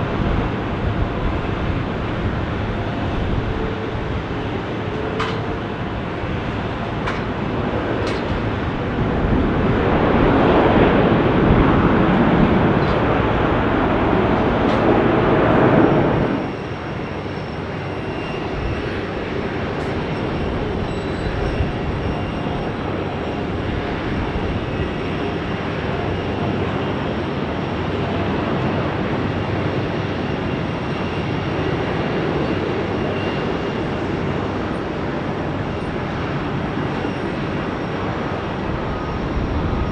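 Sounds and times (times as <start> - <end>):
jet airliner rumble: 0.0 - 39.9.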